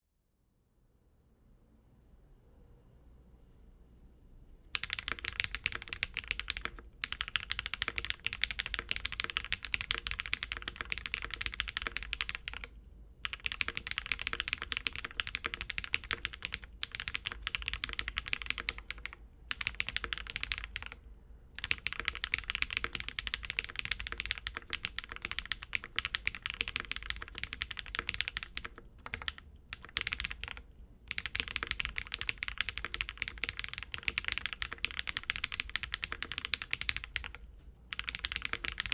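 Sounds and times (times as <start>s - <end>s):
mechanical keyboard typing: 4.7s - 21.0s, 21.6s - 38.9s.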